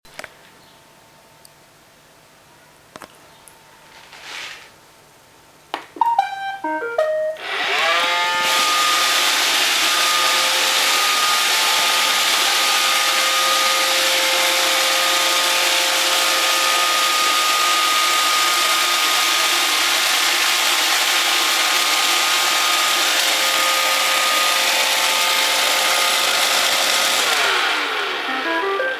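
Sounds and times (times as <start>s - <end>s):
robot vacuum whirring: 7.4s - 28.9s.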